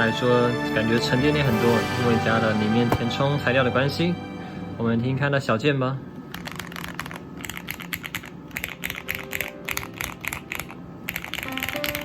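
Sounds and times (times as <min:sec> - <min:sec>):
mechanical keyboard typing: 0:06.3 - 0:12.0.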